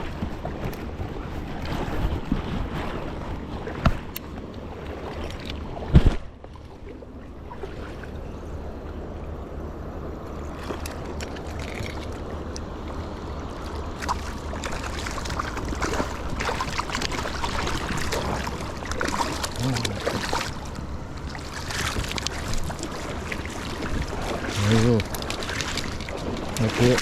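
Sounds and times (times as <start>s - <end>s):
water flowing: 6.6s - 27.0s.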